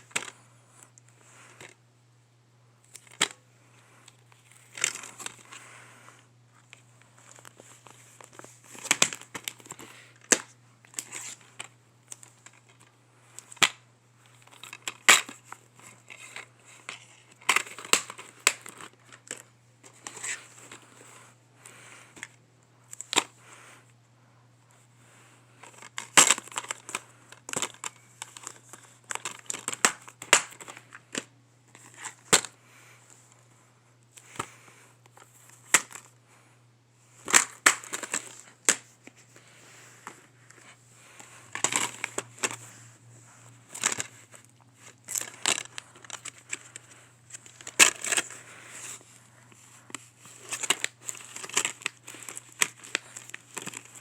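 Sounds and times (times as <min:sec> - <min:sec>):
plastic packaging crinkling and tearing: 0:25.6 - 0:31.2, 0:43.7 - 0:54.0
plastic cases clicking: 0:25.6 - 0:32.5, 0:41.2 - 0:42.7, 0:50.3 - 0:54.0.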